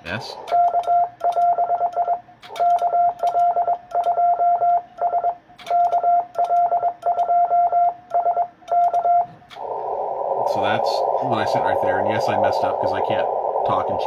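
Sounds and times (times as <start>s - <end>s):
morse code beeps: 0.0s - 9.4s
radio receiver hiss: 9.6s - 14.0s.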